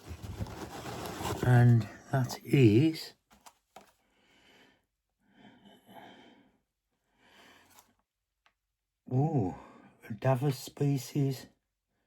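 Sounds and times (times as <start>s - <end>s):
faint breaths: 4.0s - 7.9s.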